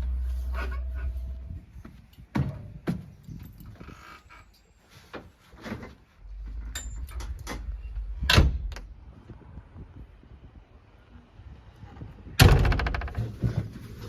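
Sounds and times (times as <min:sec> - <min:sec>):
low rumble: 0:06.2 - 0:11.8
sharp knocks and clunks: 0:12.4 - 0:13.8.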